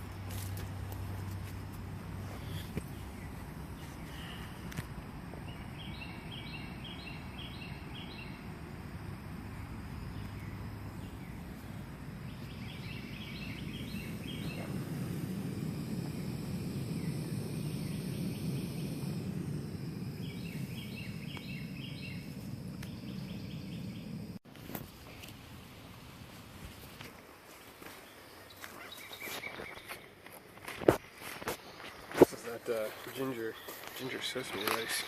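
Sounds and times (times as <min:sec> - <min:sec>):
bird chirping: 0:05.4 - 0:08.5, 0:09.5 - 0:15.0, 0:16.1 - 0:24.4
steady outdoor rushing noise: 0:06.9 - 0:24.4.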